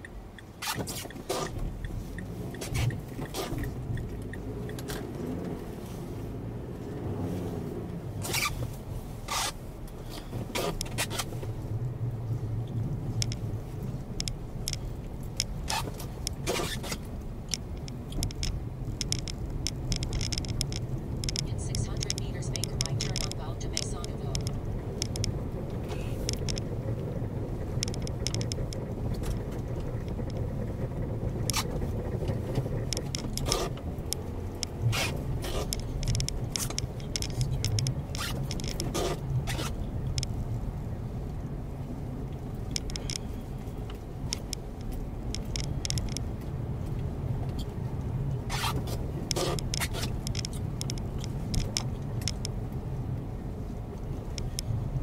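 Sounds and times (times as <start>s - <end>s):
car road and engine rumble: 0.0s - 55.0s
short scrapes and ticks: 0.4s - 6.2s, 8.2s - 11.6s, 12.6s - 40.6s, 42.4s - 52.6s.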